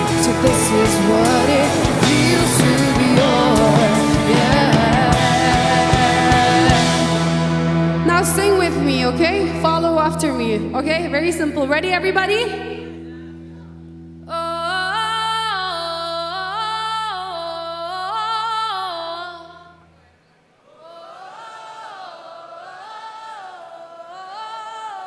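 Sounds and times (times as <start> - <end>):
crowd singing: 0.0 - 9.9
lead singer singing: 0.0 - 11.2
held synth bass note: 0.0 - 13.3.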